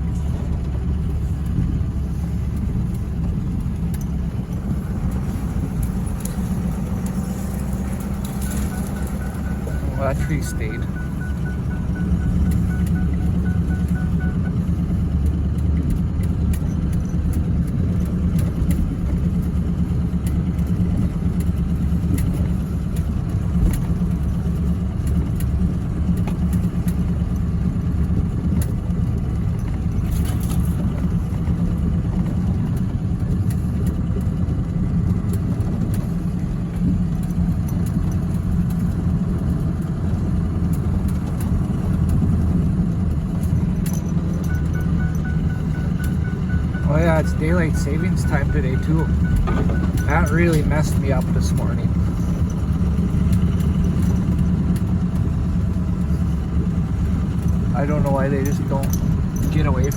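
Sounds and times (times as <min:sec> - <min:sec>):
truck engine and road rumble: 0:00.0 - 0:59.9
knocks and rattles: 0:36.7 - 0:55.9.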